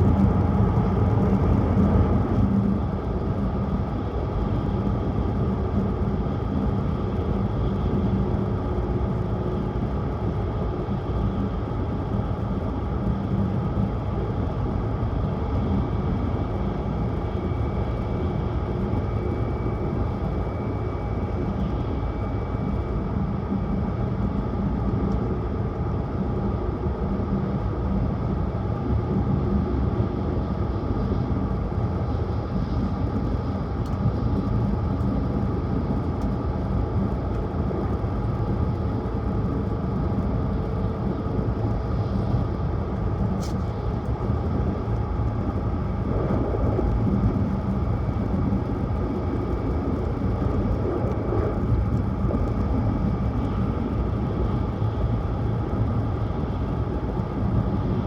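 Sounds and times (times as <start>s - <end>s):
train rumble inside cabin: 19.6s - 58.0s.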